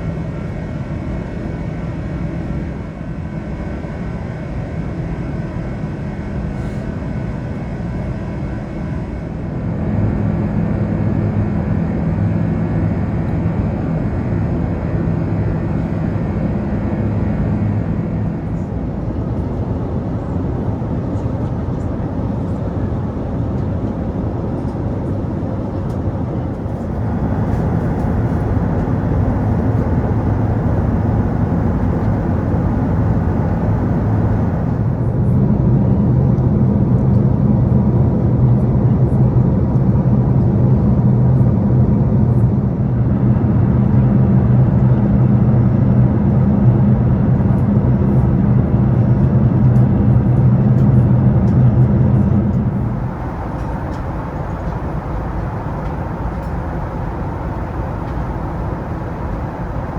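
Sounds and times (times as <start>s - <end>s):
airliner cabin rumble: 9.0s - 36.2s, 40.4s - 59.9s.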